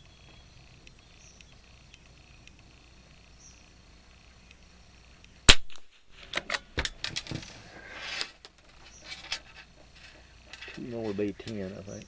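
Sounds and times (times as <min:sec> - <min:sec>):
rifle shot: 0:05.5 - 0:06.2.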